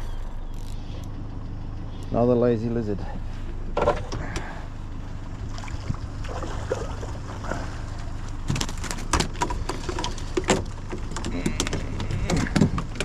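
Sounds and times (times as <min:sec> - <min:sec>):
sharp knocks and clicks: 0:08.4 - 0:13.0.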